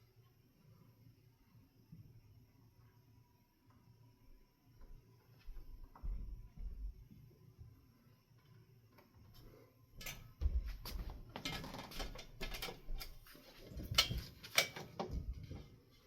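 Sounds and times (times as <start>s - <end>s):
hands clicking and rustling hardware: 10.0s - 15.8s.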